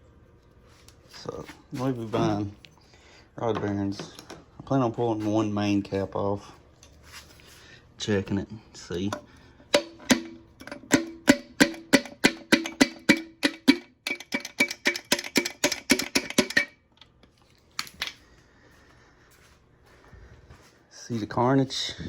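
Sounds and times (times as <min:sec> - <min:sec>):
metal-on-metal taps ringing: 0:09.1 - 0:16.8.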